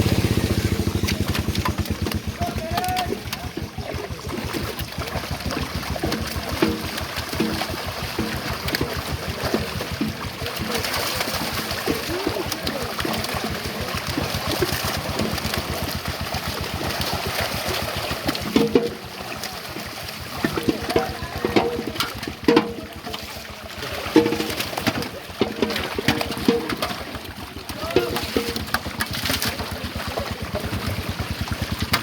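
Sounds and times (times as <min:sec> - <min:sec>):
faint voices: 0:00.0 - 0:32.0
small engine chugging: 0:00.0 - 0:32.0
water splashing and churning: 0:00.0 - 0:32.0.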